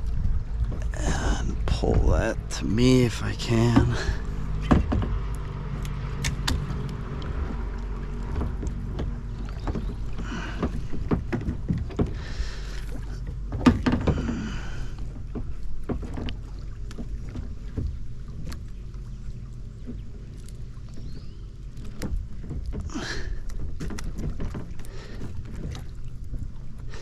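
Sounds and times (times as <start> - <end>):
steady low hum: 0.0 - 23.8
knocks against boat hull: 3.6 - 5.3, 8.3 - 18.0, 21.9 - 25.9.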